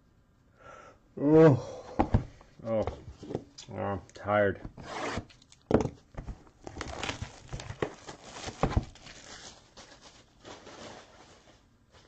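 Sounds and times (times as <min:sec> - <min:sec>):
wrapper crinkling: 0:06.6 - 0:12.0.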